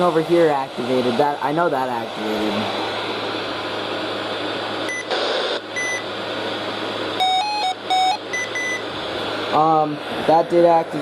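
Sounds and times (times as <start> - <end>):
short electronic beeps: 4.9 - 5.2, 5.8 - 6.0, 7.2 - 8.8
steady hiss: 8.8 - 11.0.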